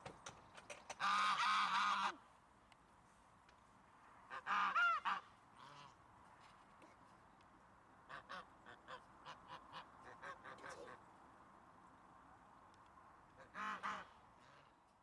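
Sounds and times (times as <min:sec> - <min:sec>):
goose honking: 0:01.0 - 0:02.2, 0:04.3 - 0:06.0, 0:13.4 - 0:14.7.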